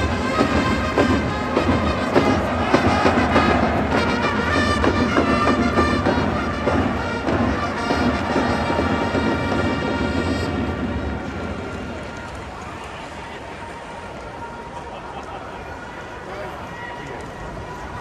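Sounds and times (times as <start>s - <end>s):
trumpets playing a cheer tune: 0.0s - 12.3s
steady drumbeats: 0.0s - 12.6s.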